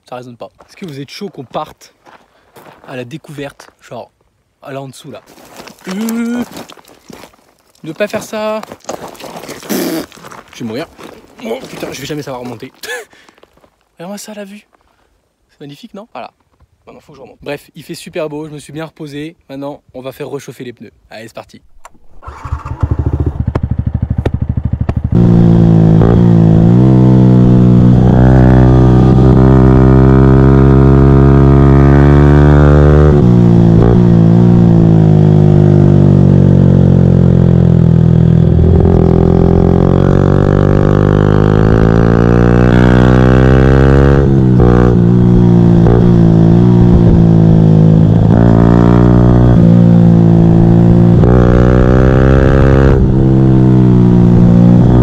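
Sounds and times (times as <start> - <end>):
motorcycle engine accelerating: 21.9 - 55.0.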